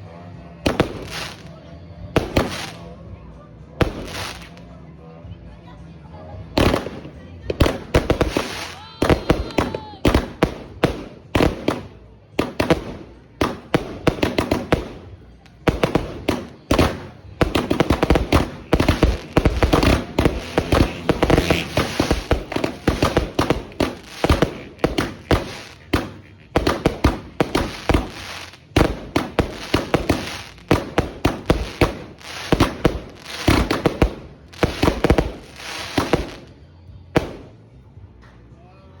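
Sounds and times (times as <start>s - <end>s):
fireworks bangs and crackling: 0.4s - 3.0s, 3.8s - 4.7s, 6.6s - 37.7s.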